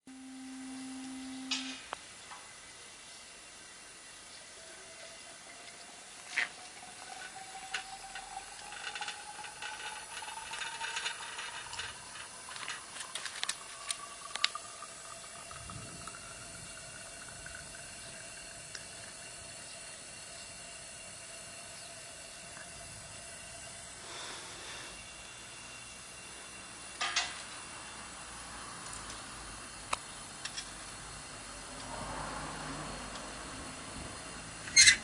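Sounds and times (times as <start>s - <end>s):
faint whine rising in pitch: 0.1s - 2.0s, 4.6s - 18.5s, 31.4s - 34.7s.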